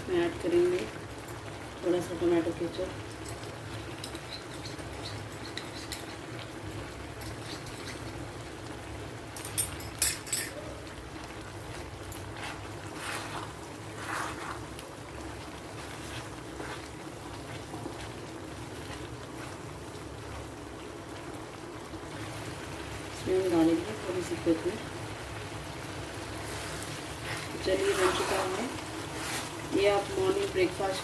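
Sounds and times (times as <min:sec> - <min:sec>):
steady low hiss: 0:00.0 - 0:31.0
spoon stirring in a pan: 0:03.2 - 0:08.4, 0:09.3 - 0:20.4, 0:26.4 - 0:31.0
spoon clinking on pan: 0:09.4 - 0:10.6.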